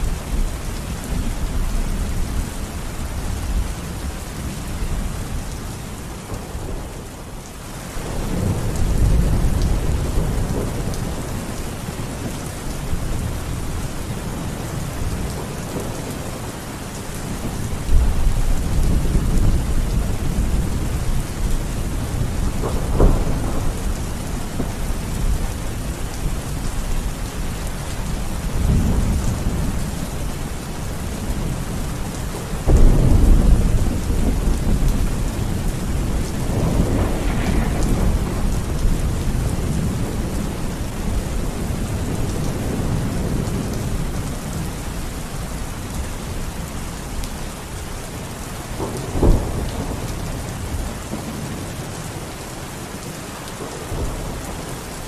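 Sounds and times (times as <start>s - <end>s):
heavy rain: 0.0s - 55.0s
thunder rumbling: 8.0s - 16.4s, 17.2s - 45.0s, 48.8s - 52.0s
thunder crack: 36.4s - 40.0s.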